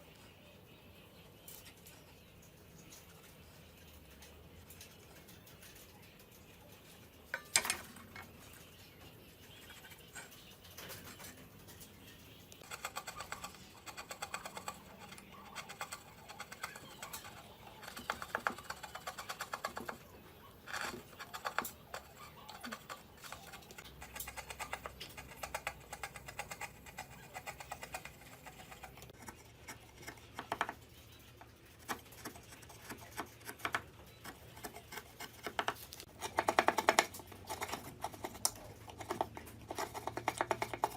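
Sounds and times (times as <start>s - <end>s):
hand tools scraping wood: 20.6s - 23.8s.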